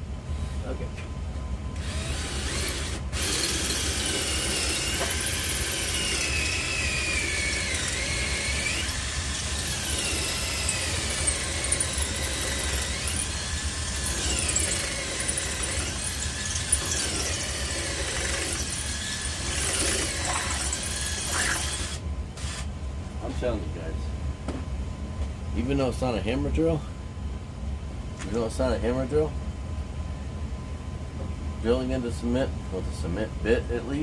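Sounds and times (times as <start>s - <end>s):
drill boring into wall: 1.8s - 22.7s.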